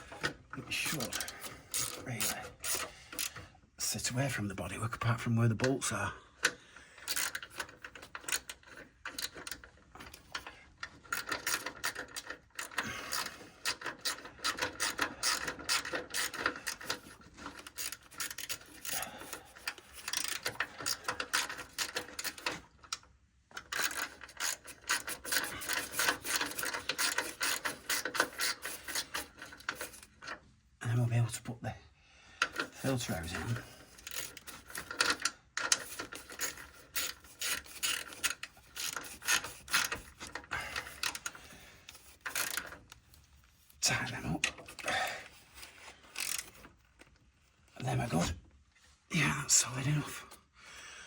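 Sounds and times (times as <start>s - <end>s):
ratchet wrench clicking: 1.1s - 3.3s, 7.1s - 9.6s, 11.1s - 22.5s, 23.7s - 30.1s, 34.0s - 41.4s, 42.0s - 42.8s, 46.1s - 46.6s.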